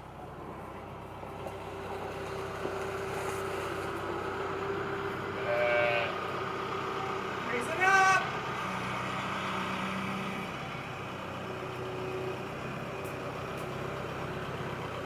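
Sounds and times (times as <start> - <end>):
sheep bleating: 5.4 - 6.2.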